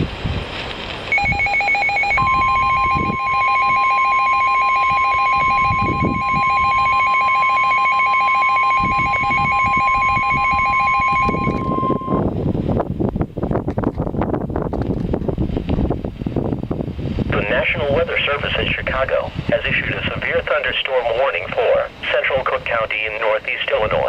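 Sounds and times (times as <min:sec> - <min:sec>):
steady high alarm tone: 0:01.1 - 0:12.3
rapidly pulsing electronic beep: 0:01.2 - 0:12.3
hissy static: 0:17.2 - 0:24.0.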